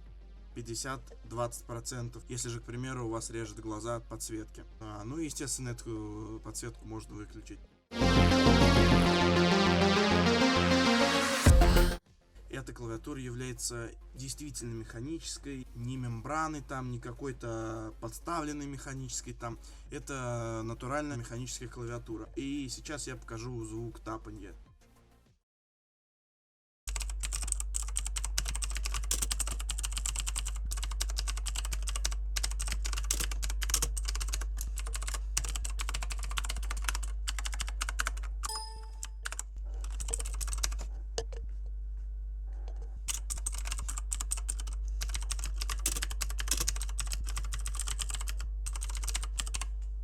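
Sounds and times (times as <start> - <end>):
mechanical keyboard typing: 26.9 - 41.4, 43.1 - 49.7.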